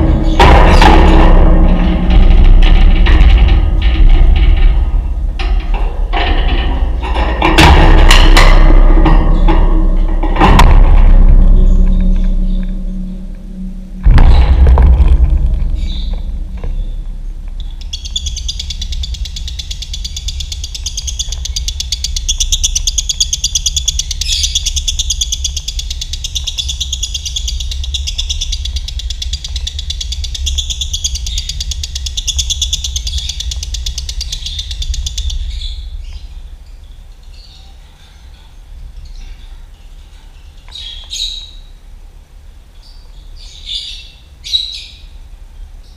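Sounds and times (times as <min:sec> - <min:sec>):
low hum: 0:00.0 - 0:40.8
lovebird chattering trill: 0:17.6 - 0:35.9.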